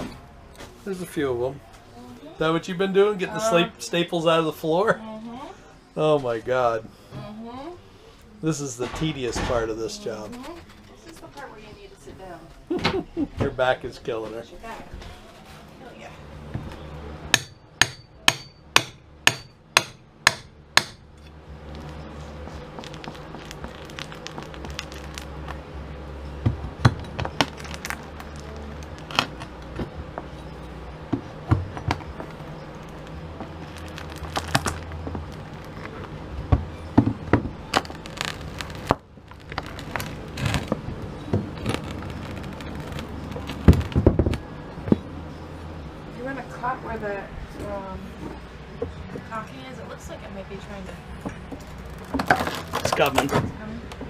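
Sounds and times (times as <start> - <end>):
low steady hum: 0.0 - 54.0
hammer blows with metallic ring: 17.3 - 21.1.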